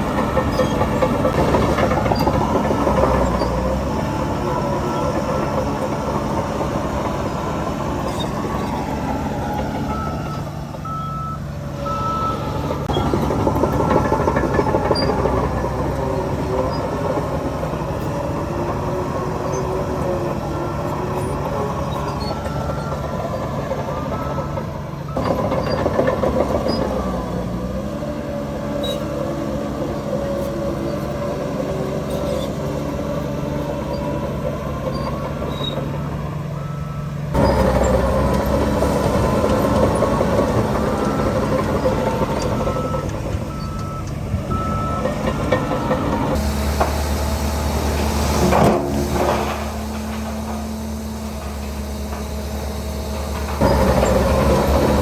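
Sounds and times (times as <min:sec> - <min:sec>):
heavy diesel engines running: 0:00.0 - 0:55.0
reversing alarm beeping: 0:07.0 - 0:15.9, 0:20.3 - 0:27.4, 0:36.6 - 0:47.7.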